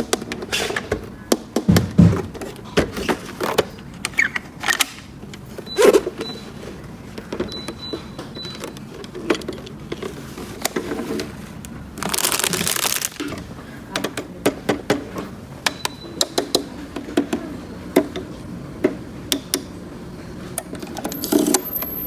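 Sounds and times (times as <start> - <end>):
dull thuds: 1.6 - 2.4.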